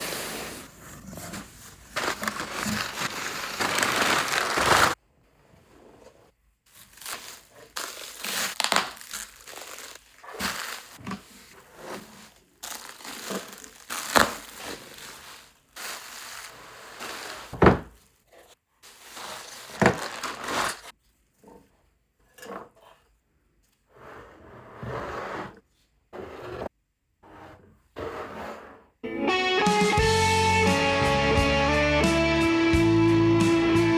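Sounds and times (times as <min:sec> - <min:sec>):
packing material crinkling: 0:00.1 - 0:05.0, 0:06.7 - 0:17.7, 0:18.8 - 0:20.9.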